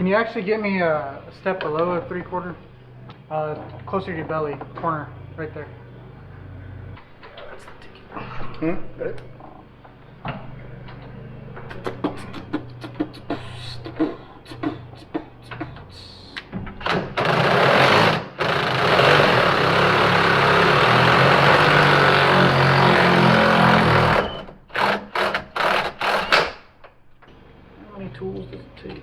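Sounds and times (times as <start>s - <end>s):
impact wrench hammering: 16.8s - 26.7s.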